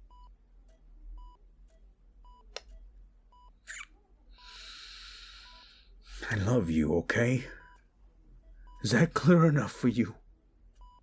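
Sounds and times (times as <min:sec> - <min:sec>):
heart monitor beeping: 0:00.0 - 0:03.6, 0:04.4 - 0:06.0, 0:06.6 - 0:09.8, 0:10.7 - 0:11.0.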